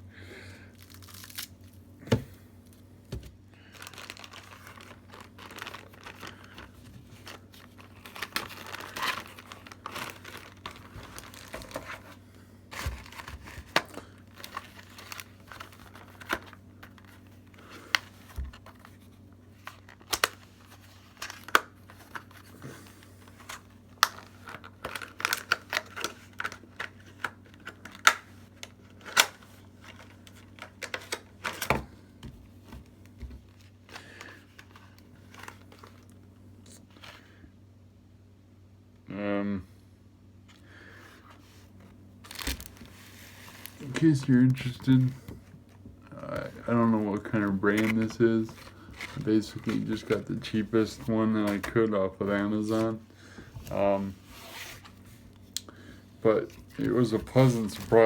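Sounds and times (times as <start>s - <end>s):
packaging crinkling and tearing: 0.7s - 1.8s, 3.6s - 31.9s, 32.6s - 37.2s, 42.2s - 53.0s, 56.4s - 58.0s.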